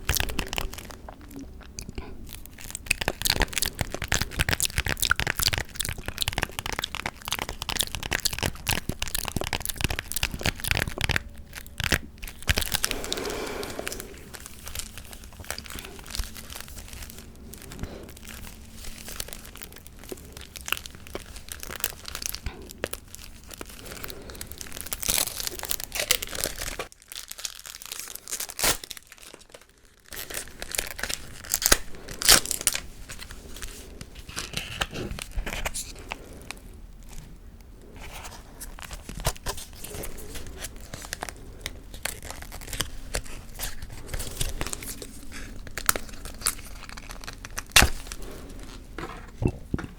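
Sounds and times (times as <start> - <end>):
gum chewing: 0.0 - 26.8, 39.5 - 49.9.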